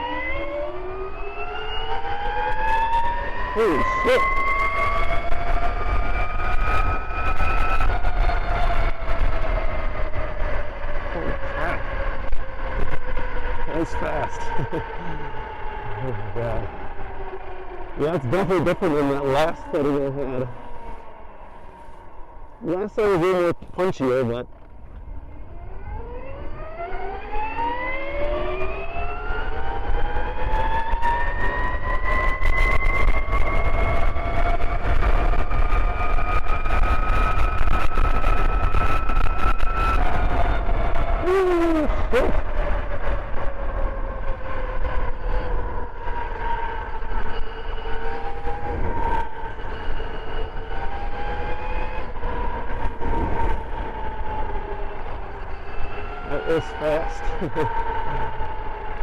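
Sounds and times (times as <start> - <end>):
electric motorbike motor whine: 0.0 - 22.6, 24.6 - 41.2, 42.4 - 59.0
wind rumble on microphone: 4.2 - 18.8, 24.4 - 56.6.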